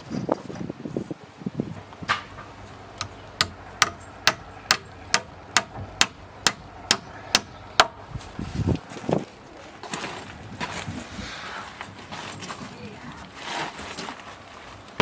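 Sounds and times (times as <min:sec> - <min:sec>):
hammer striking: 0:03.0 - 0:08.0.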